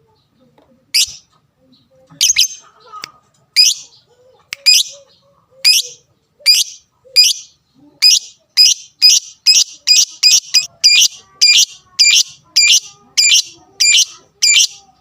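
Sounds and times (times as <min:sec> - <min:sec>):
lovebird shrill chirps: 0:01.0 - 0:01.2, 0:02.2 - 0:02.6, 0:03.6 - 0:03.9, 0:04.6 - 0:05.0, 0:05.7 - 0:14.8.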